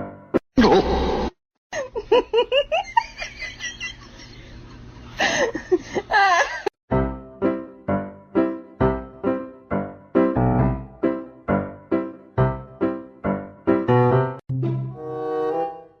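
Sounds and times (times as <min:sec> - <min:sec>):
person giggling and laughing: 0:00.6 - 0:01.0, 0:01.7 - 0:06.7.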